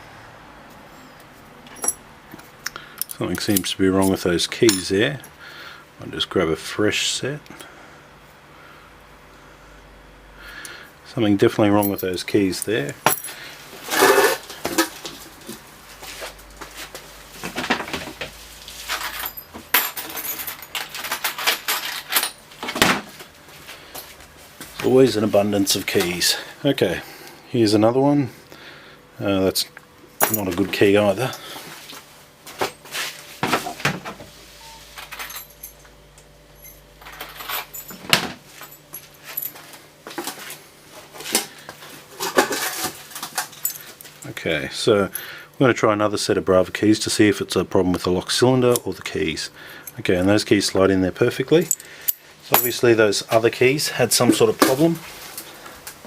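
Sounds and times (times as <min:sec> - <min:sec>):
metal keys clinking: 0:01.6 - 0:02.0, 0:18.9 - 0:22.6, 0:30.2 - 0:30.6, 0:35.0 - 0:39.6, 0:43.4 - 0:44.3.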